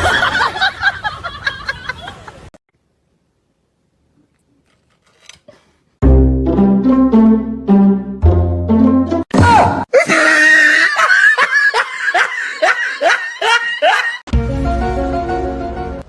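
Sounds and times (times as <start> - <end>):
music with plucked bass line: 6.0 - 9.2, 14.3 - 16.0
rapid repeated laughing cries: 9.9 - 14.2.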